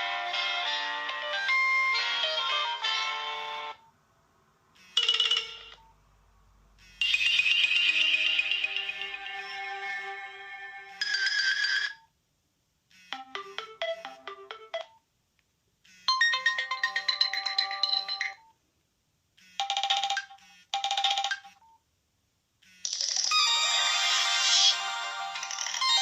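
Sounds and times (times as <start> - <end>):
phone ringtone melodies: 0.0 - 3.8, 4.8 - 5.9, 6.8 - 12.0, 12.9 - 15.0, 15.9 - 18.4, 19.6 - 21.6, 22.9 - 26.0.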